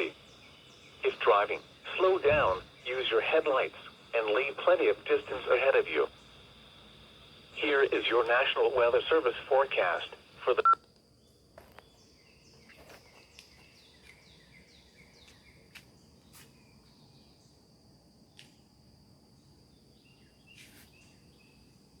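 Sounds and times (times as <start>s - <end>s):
steady high whine: 0.0s - 10.8s.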